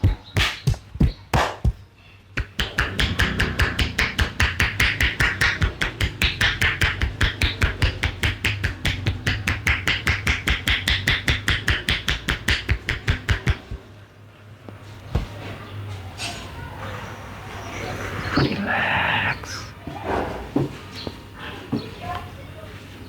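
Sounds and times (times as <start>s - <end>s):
hands slapping in massage: 0.3s - 1.8s, 2.4s - 13.9s.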